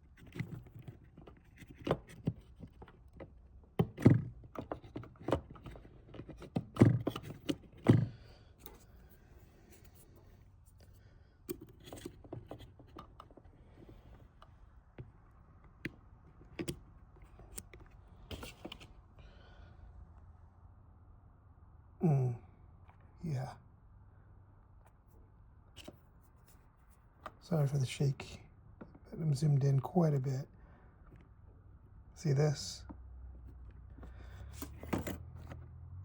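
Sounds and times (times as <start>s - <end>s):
plastic parts clicking and tapping: 0.2s - 8.8s, 11.5s - 18.9s.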